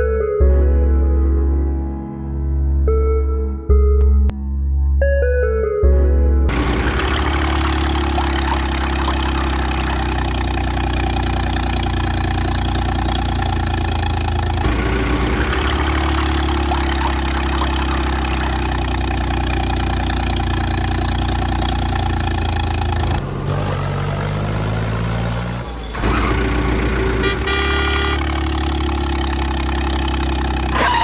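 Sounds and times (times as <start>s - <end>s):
tractor engine idling: 6.5s - 31.0s.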